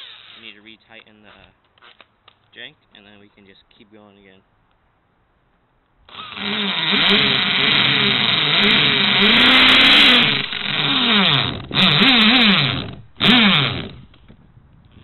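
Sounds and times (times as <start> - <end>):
power drill boring through phone: 6.1 - 14.2.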